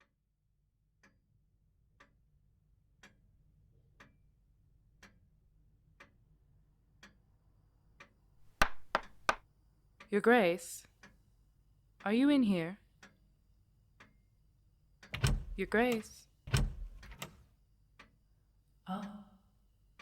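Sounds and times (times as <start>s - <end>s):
sharp knock: 8.6s - 9.4s.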